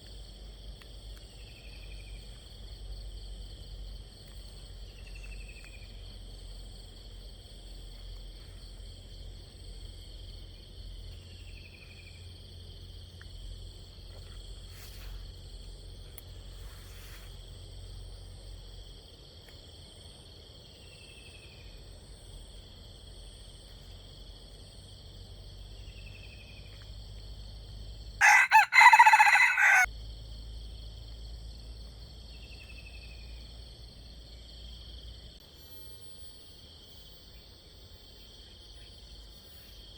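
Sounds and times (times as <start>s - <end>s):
insects droning: 0.0s - 39.9s
bird falling call: 28.2s - 29.9s
rooster crowing: 28.2s - 29.9s.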